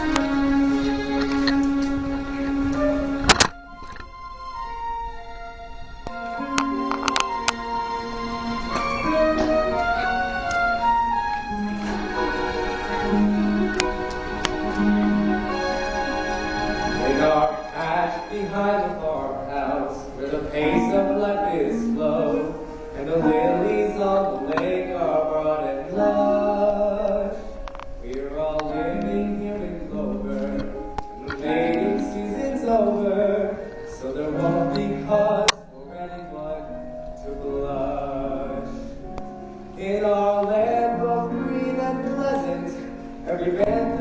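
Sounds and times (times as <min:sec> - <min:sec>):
musical theatre singing: 0:00.0 - 0:05.2, 0:05.8 - 0:44.0
instrumental accompaniment: 0:00.0 - 0:44.0.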